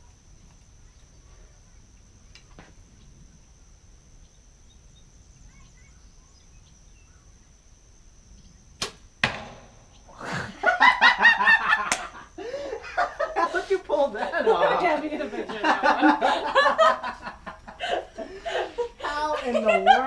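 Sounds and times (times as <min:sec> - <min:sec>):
bowstring snap: 0:08.8 - 0:09.8
arrow thudding into target: 0:08.8 - 0:10.2.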